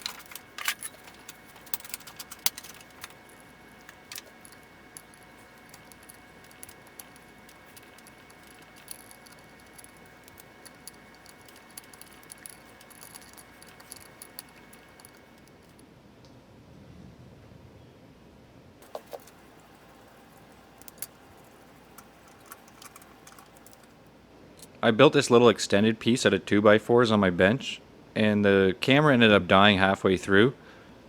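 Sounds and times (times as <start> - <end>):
metallic clicks and light rattles: 0.0 - 15.8, 18.8 - 24.0.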